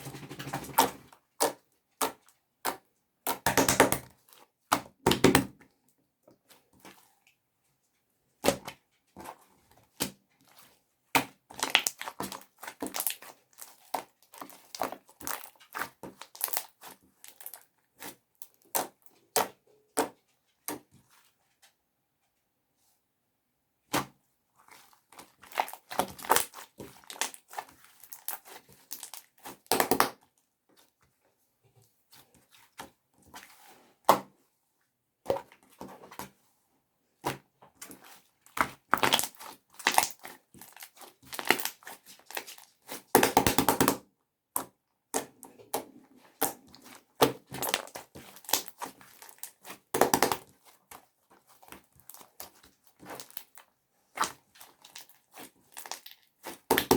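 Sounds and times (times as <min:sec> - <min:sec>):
slime squished crackling: 0:11.6 - 0:19.5, 0:24.8 - 0:30.2, 0:38.0 - 0:44.0, 0:45.2 - 0:56.9.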